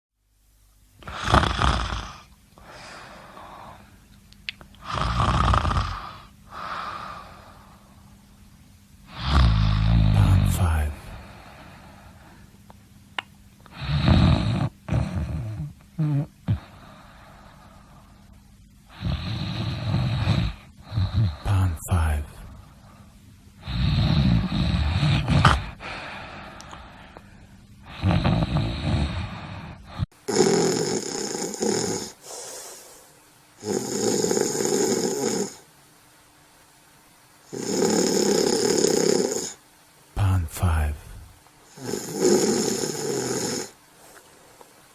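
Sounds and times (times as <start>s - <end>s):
person snoring: 1.0s - 3.9s, 4.8s - 7.9s, 9.1s - 12.4s, 13.7s - 18.0s, 18.9s - 22.8s, 23.6s - 27.2s, 27.8s - 35.6s, 37.5s - 39.6s, 40.2s - 44.3s
breathing: 2.6s - 4.0s, 5.9s - 8.1s, 11.0s - 12.6s, 16.5s - 18.3s, 22.5s - 23.8s, 25.7s - 28.0s, 29.0s - 30.1s, 32.1s - 33.2s, 44.0s - 44.7s.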